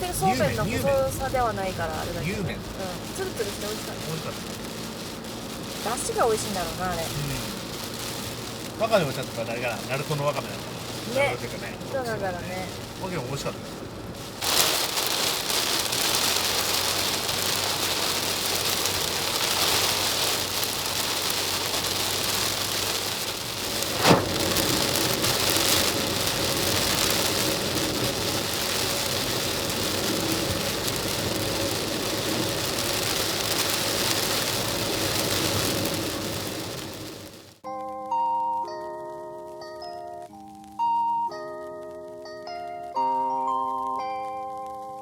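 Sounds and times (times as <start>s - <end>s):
heavy rain on a van roof: 0.0s - 37.7s
sharp knock: 24.0s - 24.5s.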